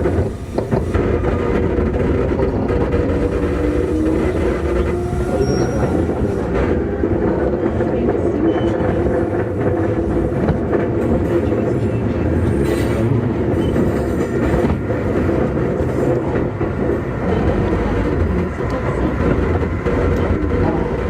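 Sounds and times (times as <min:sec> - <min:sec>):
rail-joint clicks: 0:00.0 - 0:21.0
train wheels rumbling on rail: 0:00.0 - 0:21.0.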